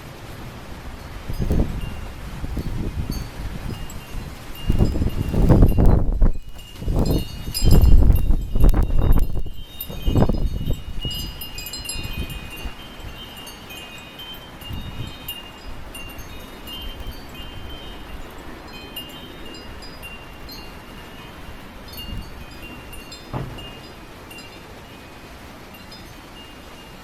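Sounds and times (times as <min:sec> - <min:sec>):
wind rumbling on microphone: 0:00.0 - 0:27.0
wind chimes ringing: 0:01.0 - 0:27.0.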